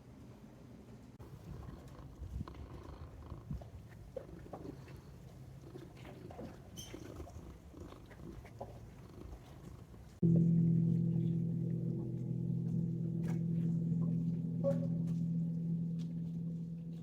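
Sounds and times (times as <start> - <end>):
cat purring: 1.5 - 6.3, 6.9 - 10.4
steady low hum: 10.0 - 17.0.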